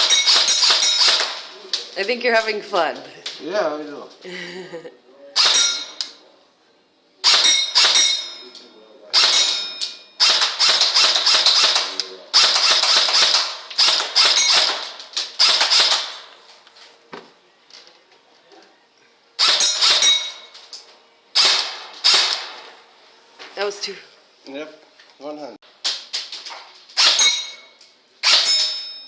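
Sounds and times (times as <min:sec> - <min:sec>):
airsoft gun shots: 0:00.0 - 0:01.5, 0:07.2 - 0:08.1, 0:09.2 - 0:09.6, 0:10.2 - 0:16.3, 0:19.4 - 0:20.3, 0:21.4 - 0:22.6, 0:27.0 - 0:27.5, 0:28.2 - 0:28.8.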